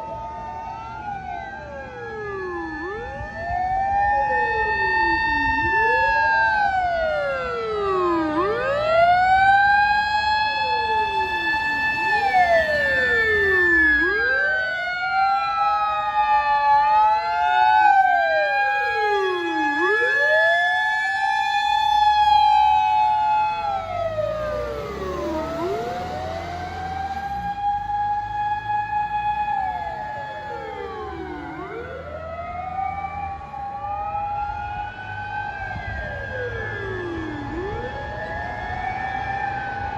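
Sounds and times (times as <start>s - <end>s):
mechanical sirens wailing: 0.0s - 39.9s
truck engine rumble: 21.2s - 39.9s.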